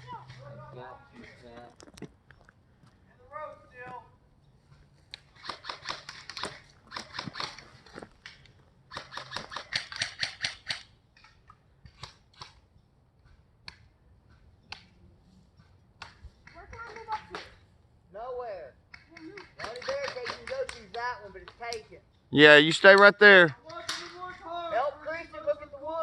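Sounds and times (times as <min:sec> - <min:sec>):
airsoft guns firing: 0:05.2 - 0:07.7, 0:08.9 - 0:10.9, 0:19.3 - 0:20.7.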